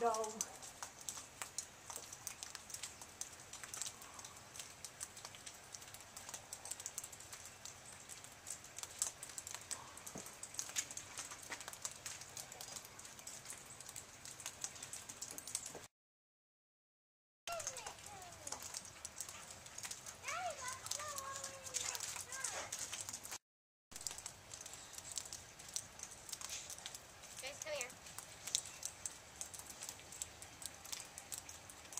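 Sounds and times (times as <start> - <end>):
sleet ticking on hard surfaces: 17.5 - 23.4.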